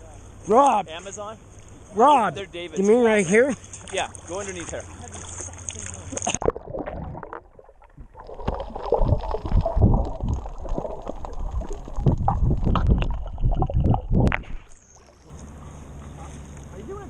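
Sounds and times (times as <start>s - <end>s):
seawater sloshing and gurgling: 3.5s - 16.7s.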